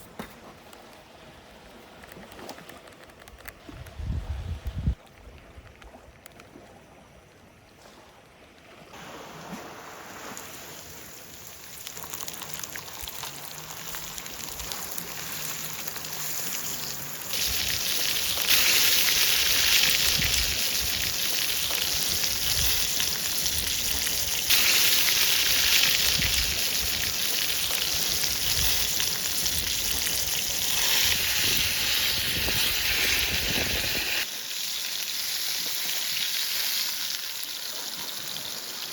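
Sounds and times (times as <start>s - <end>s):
fish sizzling in frying: 10.8s - 38.9s.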